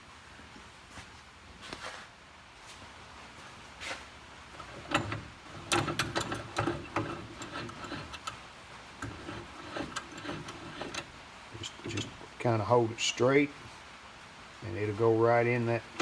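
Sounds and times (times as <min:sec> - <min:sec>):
vise screw clicking and knocking: 0:04.6 - 0:08.4, 0:09.0 - 0:12.4.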